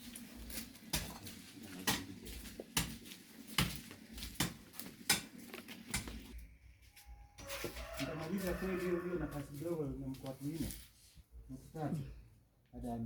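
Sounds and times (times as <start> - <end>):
digging tool striking soil: 0.0 - 6.3.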